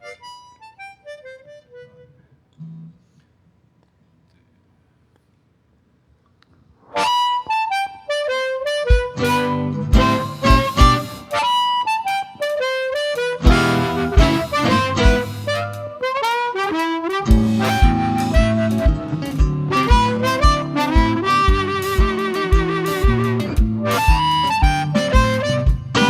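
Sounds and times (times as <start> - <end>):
blues harmonica melody: 0.0 - 2.4, 6.9 - 26.0
band with bass and kick drum: 8.9 - 11.2, 13.4 - 15.9, 17.3 - 26.0.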